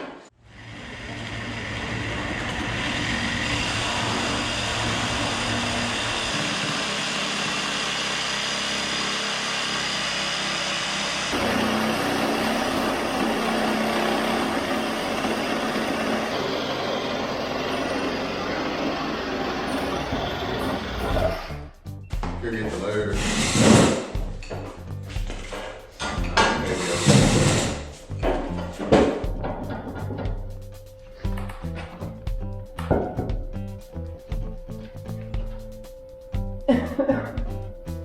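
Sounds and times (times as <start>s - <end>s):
motor running steadily: 1.1s - 21.5s.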